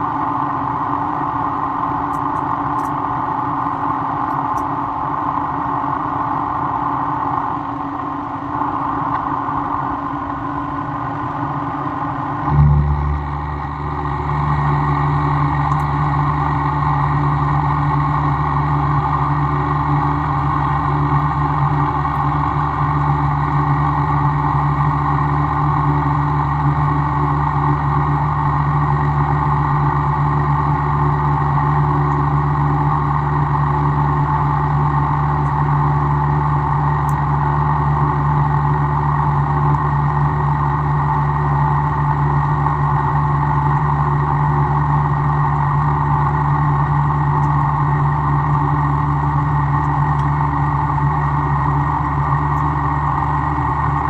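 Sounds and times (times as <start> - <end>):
deep motor hum: 8.5 - 54.0.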